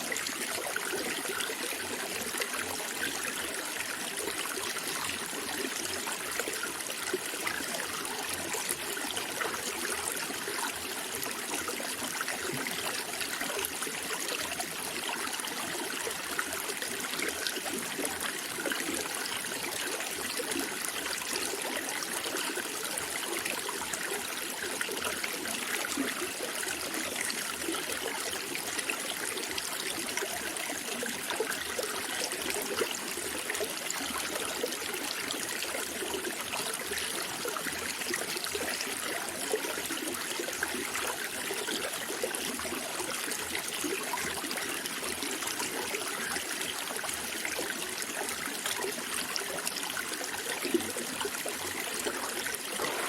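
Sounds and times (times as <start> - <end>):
running water flowing: 43.0 - 53.0.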